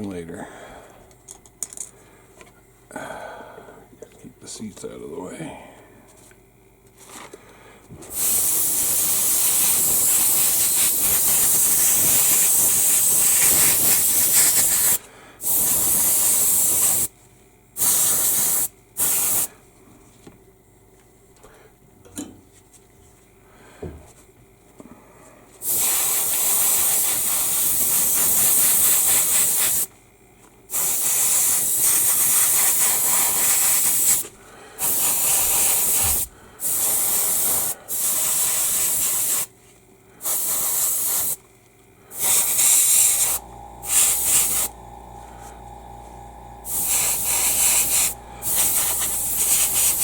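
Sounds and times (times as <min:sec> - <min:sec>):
steady hum with faint tone: 0:00.0 - 0:16.2, 0:32.6 - 0:40.6, 0:41.4 - 0:50.0
airbrush spraying hiss: 0:08.1 - 0:17.1, 0:17.8 - 0:19.5, 0:25.6 - 0:29.9, 0:30.7 - 0:39.5, 0:40.2 - 0:41.4, 0:42.1 - 0:50.0.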